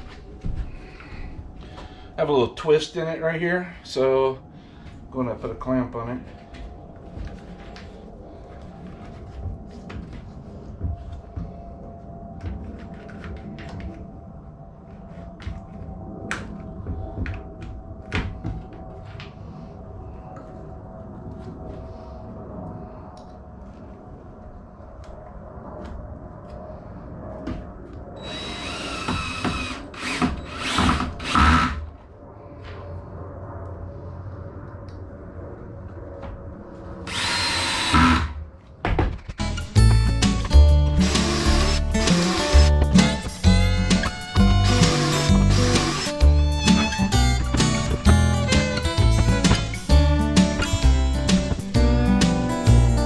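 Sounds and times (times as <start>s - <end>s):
steady low hum: 0.0s - 53.0s
cordless drill driving screws: 28.2s - 31.8s, 37.1s - 38.4s, 41.0s - 49.8s.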